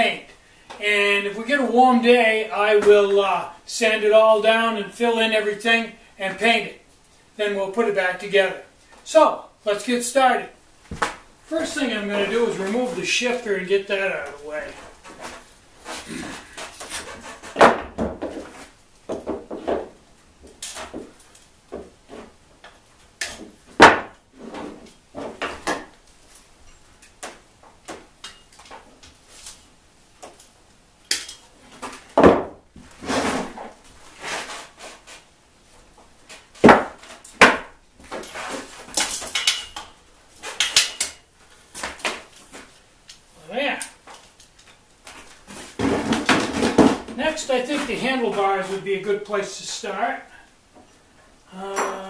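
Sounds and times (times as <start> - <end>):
hand tools and metal clinking: 24.9 - 27.2, 28.2 - 28.8, 30.3 - 31.6, 38.1 - 42.5.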